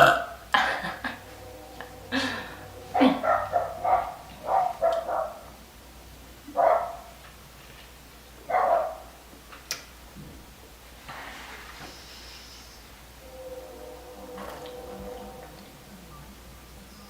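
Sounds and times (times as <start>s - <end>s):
girl burping: 0.0s - 3.5s.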